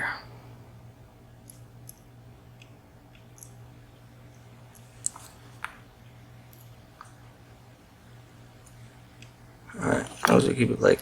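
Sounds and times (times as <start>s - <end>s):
faint low hum: 0.0s - 11.0s.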